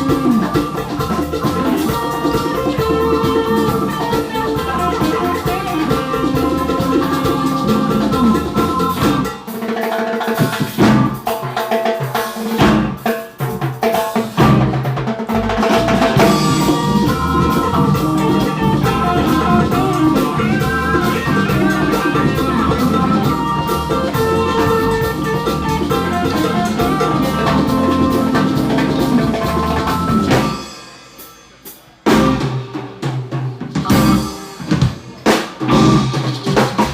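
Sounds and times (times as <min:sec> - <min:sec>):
drum kit hits: 0:00.0 - 0:11.6, 0:12.4 - 0:36.9
live band playing: 0:00.0 - 0:36.9.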